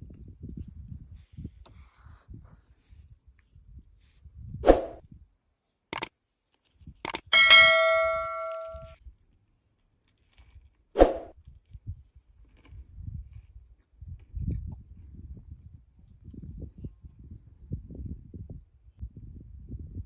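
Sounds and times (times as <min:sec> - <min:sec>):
knocks and clicks: 0:07.1 - 0:08.8
metal object ringing bell-like: 0:07.4 - 0:08.9.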